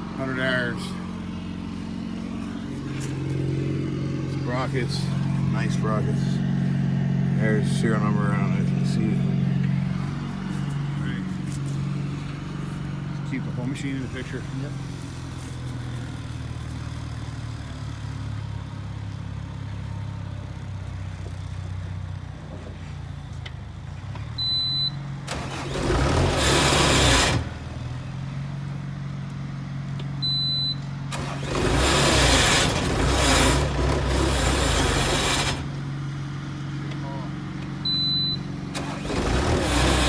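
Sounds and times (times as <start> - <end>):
diesel engine running: 0.0 - 40.0
short high beep: 37.9 - 38.5.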